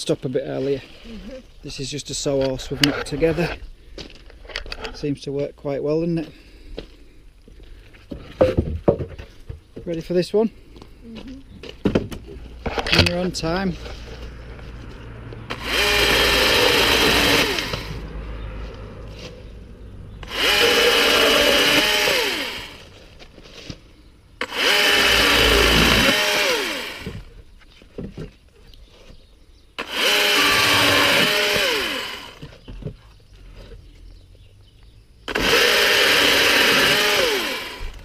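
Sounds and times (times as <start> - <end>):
battery chainsaw motor whining: 15.4 - 18.1, 20.2 - 23.0, 24.4 - 27.4, 29.8 - 32.6, 35.2 - 38.0.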